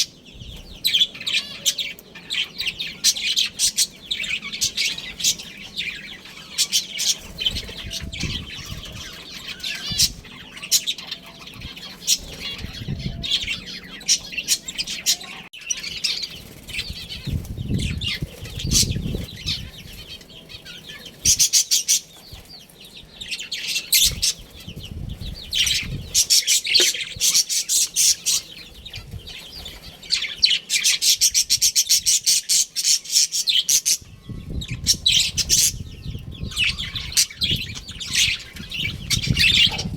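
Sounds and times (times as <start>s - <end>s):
budgerigars chirping: 0.0s - 39.9s
wings flapping: 15.8s - 19.7s.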